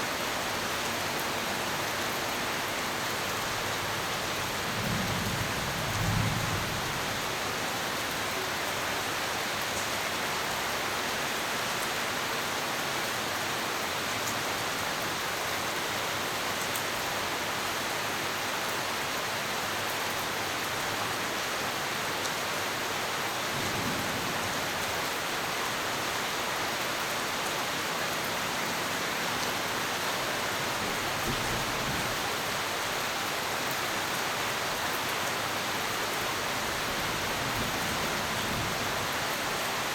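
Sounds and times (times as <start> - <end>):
steady rain falling: 0.0 - 39.9
thunder rumbling: 30.7 - 32.7.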